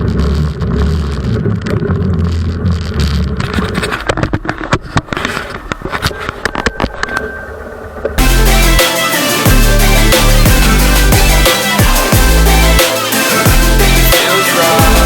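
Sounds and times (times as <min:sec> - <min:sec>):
vehicle engine running: 0:00.0 - 0:03.6.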